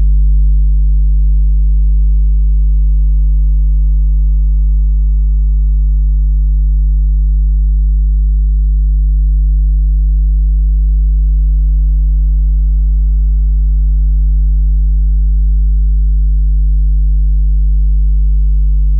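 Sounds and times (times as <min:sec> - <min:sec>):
deep electrical mains hum: 0:12.8 - 0:18.9.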